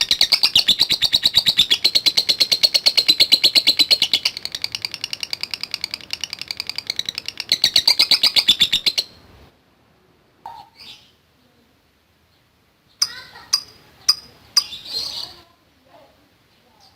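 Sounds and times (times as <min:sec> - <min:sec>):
lovebird fast high chirps: 0:00.0 - 0:09.2, 0:12.9 - 0:15.5.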